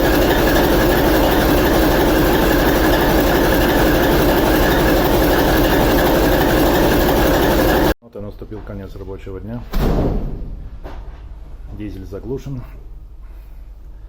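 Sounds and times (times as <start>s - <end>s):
diesel locomotive engine running: 0.0s - 8.0s.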